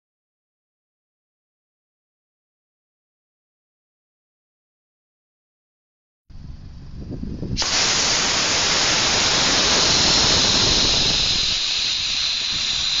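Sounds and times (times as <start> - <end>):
loud steady hiss: 7.6 - 13.0.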